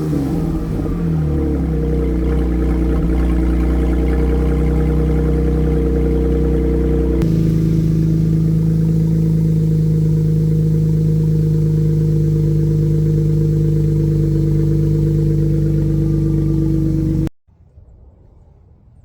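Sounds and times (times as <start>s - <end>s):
loud unmuffled car engine: 0.0s - 17.3s.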